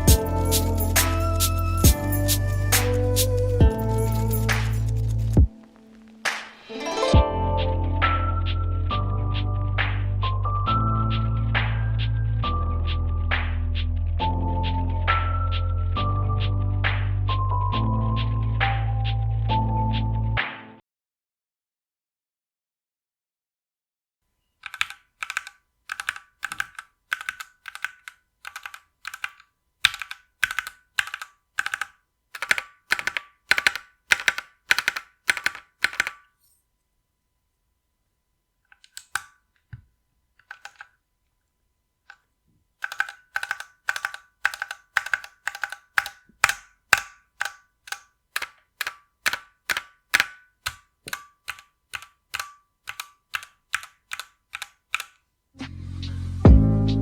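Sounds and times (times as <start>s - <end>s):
mechanical keyboard typing: 24.6s - 36.3s, 38.7s - 39.4s, 40.4s - 41.0s, 42.8s - 55.2s.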